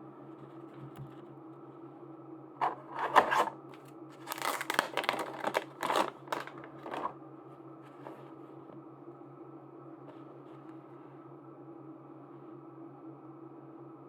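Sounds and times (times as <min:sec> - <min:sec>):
steady low hum: 0:00.0 - 0:14.0
packaging rustling and tearing: 0:02.6 - 0:07.1.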